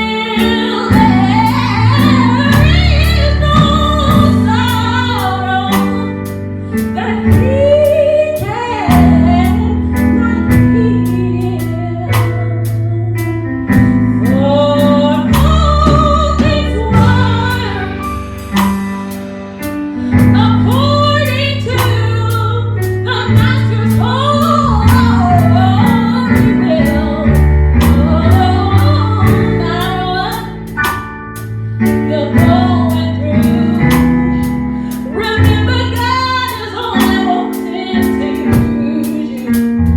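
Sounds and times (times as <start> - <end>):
bass: 0.0 - 39.9.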